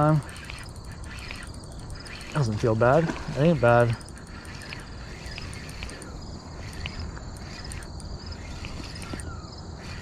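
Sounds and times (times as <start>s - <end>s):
crickets chirping: 0.0s - 10.0s.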